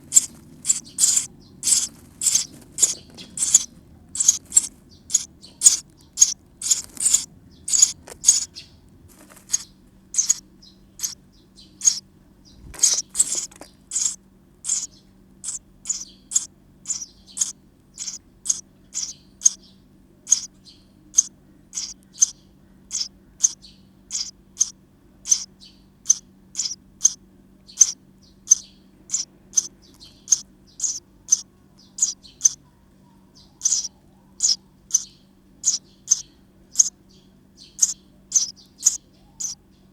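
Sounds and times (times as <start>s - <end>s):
nestlings cheeping: 0.0s - 19.7s, 20.3s - 20.5s, 21.1s - 32.7s, 33.3s - 39.6s.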